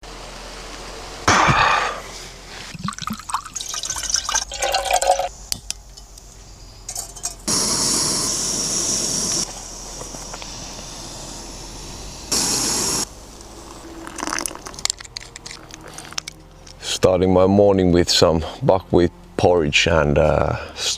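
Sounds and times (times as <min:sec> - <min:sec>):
water pouring: 0:02.7 - 0:05.3, 0:13.9 - 0:15.7
clinks and knocks: 0:06.9 - 0:07.5.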